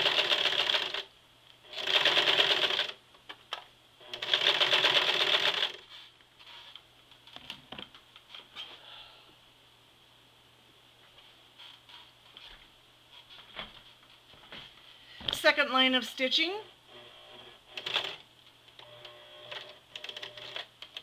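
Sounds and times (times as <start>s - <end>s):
sewing machine stitching: 1.7s - 3.0s, 4.1s - 5.8s, 16.9s - 18.2s.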